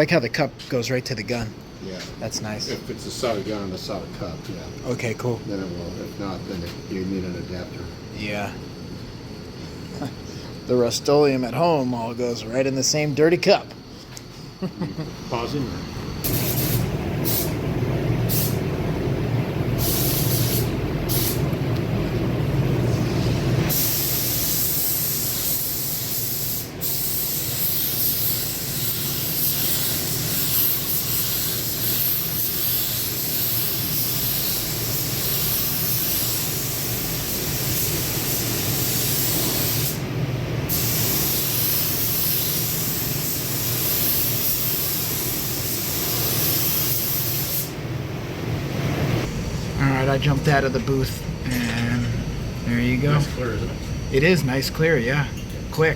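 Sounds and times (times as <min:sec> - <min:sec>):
steady low hum: 0:00.0 - 0:55.9
spray gun hissing: 0:16.2 - 0:18.7, 0:19.6 - 0:21.5, 0:22.8 - 0:40.0, 0:40.7 - 0:47.8.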